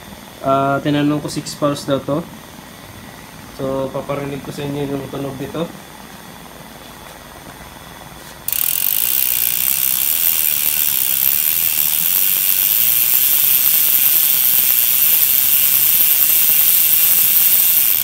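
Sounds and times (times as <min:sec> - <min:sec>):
bike hub freewheel clicking: 0:08.4 - 0:18.0.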